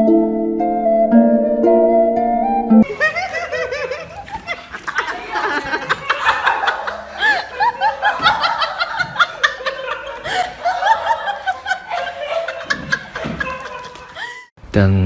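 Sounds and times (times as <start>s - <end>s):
plucked-string music: 0.0s - 2.9s
people laughing: 2.8s - 14.5s.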